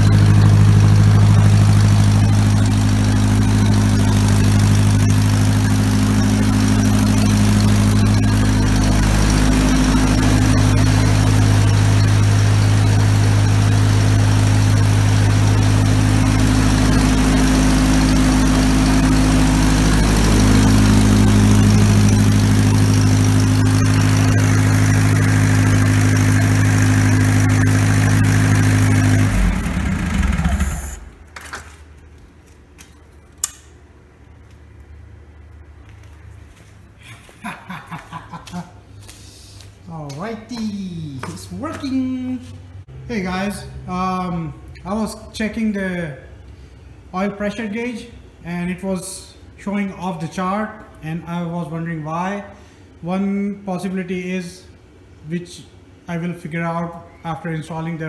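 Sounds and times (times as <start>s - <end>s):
tractor engine running: 0.0s - 31.3s.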